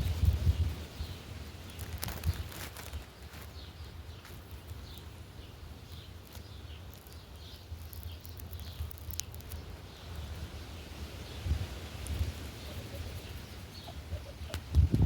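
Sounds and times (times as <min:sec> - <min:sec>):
small bird chirping: 0:00.0 - 0:15.0.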